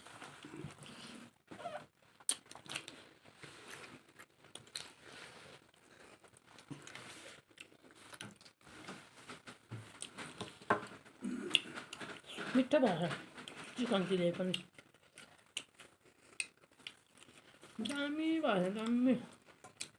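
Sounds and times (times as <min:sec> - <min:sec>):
person chewing food: 0:02.1 - 0:12.4, 0:14.5 - 0:18.0, 0:19.3 - 0:19.9.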